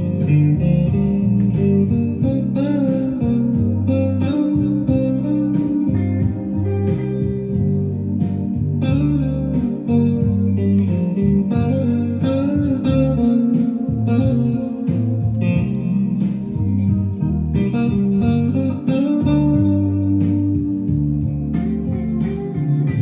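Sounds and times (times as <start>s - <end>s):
bass line: 0.0s - 23.0s
blues guitar tune: 0.0s - 23.0s.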